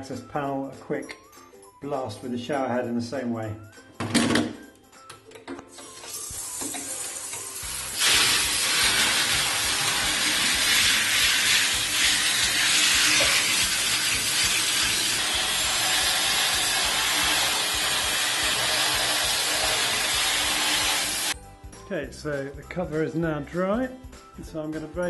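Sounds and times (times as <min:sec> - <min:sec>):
shower head spraying water: 0:05.8 - 0:21.4.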